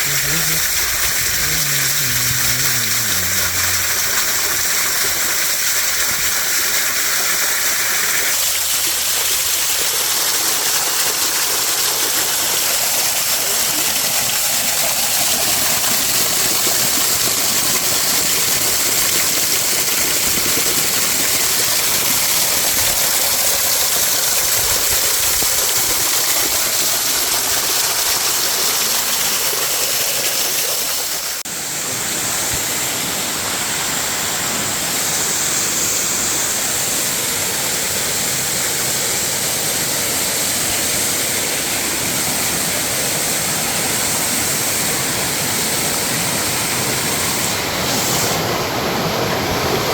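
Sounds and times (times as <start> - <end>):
waterfall rushing: 0.0 - 5.8.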